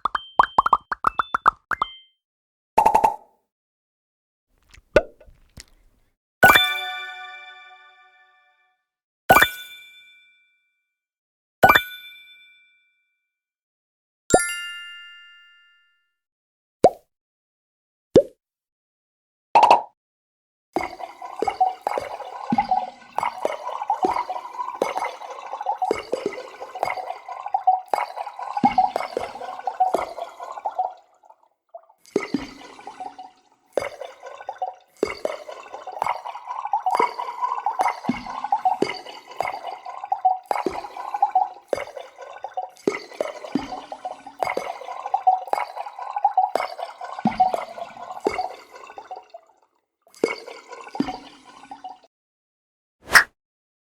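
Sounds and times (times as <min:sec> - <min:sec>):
liquid bubbling: 0:04.6 - 0:08.2, 0:20.8 - 0:49.6, 0:50.2 - 0:52.1.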